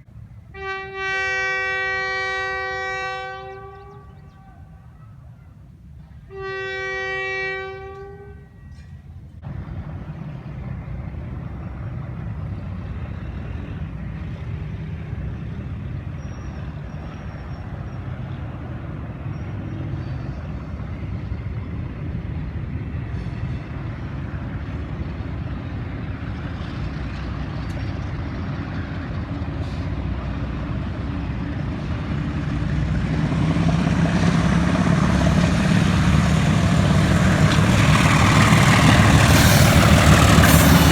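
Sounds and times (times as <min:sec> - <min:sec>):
train rumbling: 0:00.0 - 0:40.9
locomotive horn: 0:00.5 - 0:05.1, 0:06.3 - 0:09.0, 0:35.9 - 0:40.9.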